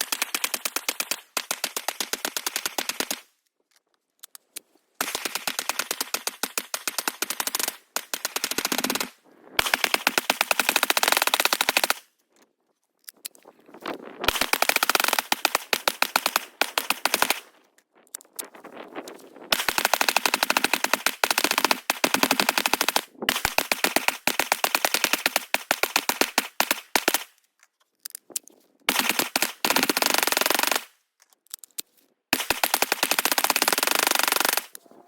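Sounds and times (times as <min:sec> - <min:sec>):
rifle rapid fire: 0:00.0 - 0:03.3, 0:05.0 - 0:12.1, 0:14.3 - 0:17.5, 0:19.5 - 0:27.3, 0:28.9 - 0:30.9, 0:32.3 - 0:34.8.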